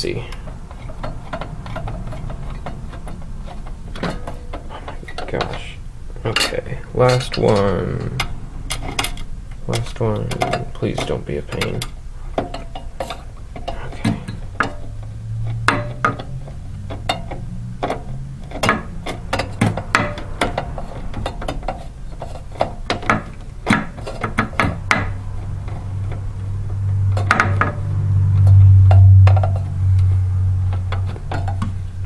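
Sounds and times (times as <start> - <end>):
low hum: 24.8 - 32.0.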